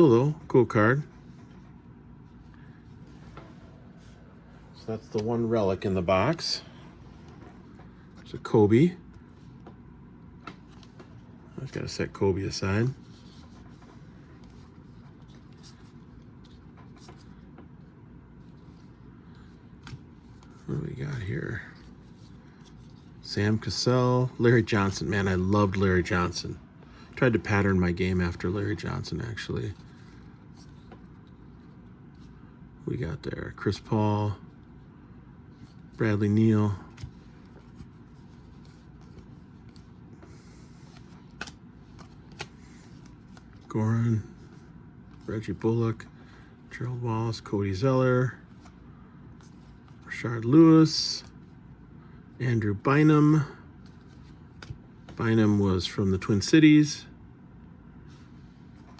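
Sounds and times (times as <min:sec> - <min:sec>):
steady low hum: 0:00.0 - 0:58.9
trading cards sliding and rubbing: 0:10.4 - 0:23.9, 0:27.6 - 0:32.4, 0:34.7 - 0:51.6, 0:52.7 - 0:54.8
trading cards clicking and rustling: 0:35.5 - 0:47.8.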